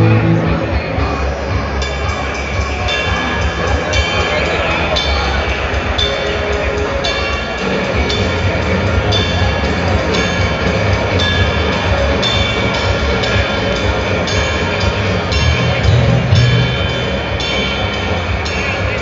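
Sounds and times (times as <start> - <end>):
metal band playing live: 0.0 - 19.0
cymbal crashes: 15.3 - 18.6.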